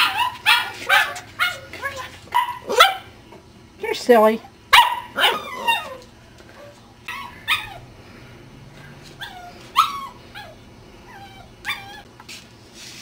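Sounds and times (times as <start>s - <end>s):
puppy yipping and whining: 0.0s - 3.1s, 4.8s - 6.0s, 6.6s - 7.9s, 9.2s - 12.1s.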